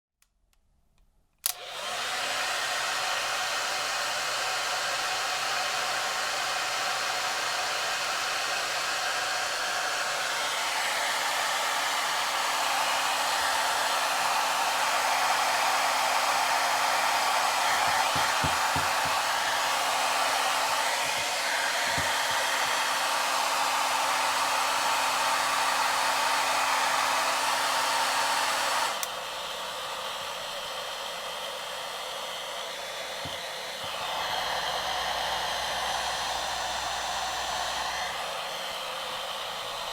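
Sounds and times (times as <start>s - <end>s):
hair dryer blowing: 1.4s - 39.9s.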